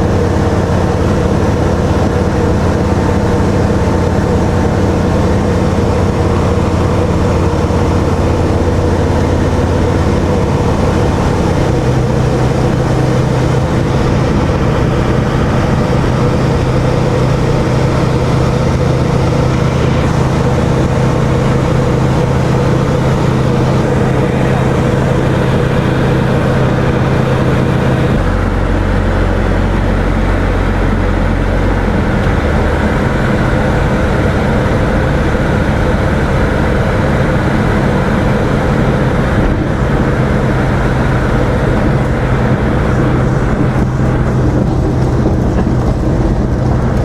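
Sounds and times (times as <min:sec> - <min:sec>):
light aircraft engine drone: 0:00.0 - 0:47.0.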